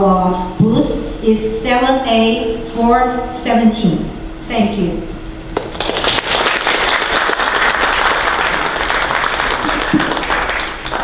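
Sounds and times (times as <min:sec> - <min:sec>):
audience applauding: 0:05.6 - 0:11.0.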